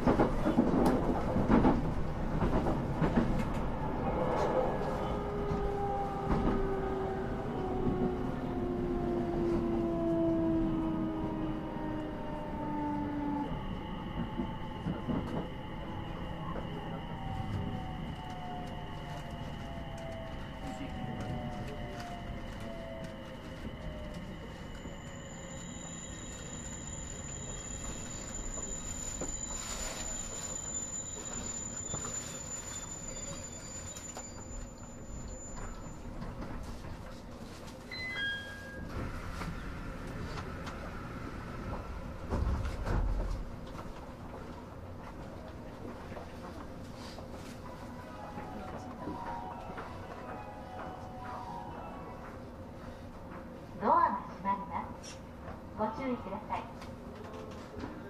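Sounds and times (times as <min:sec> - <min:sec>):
train running rumble: 0:00.0 - 0:10.2, 0:12.6 - 0:37.8.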